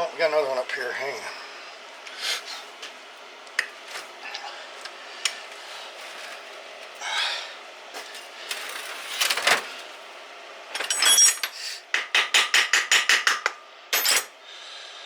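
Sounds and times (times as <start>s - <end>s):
metal tools clinking on engine: 10.7s - 11.7s, 13.9s - 14.4s.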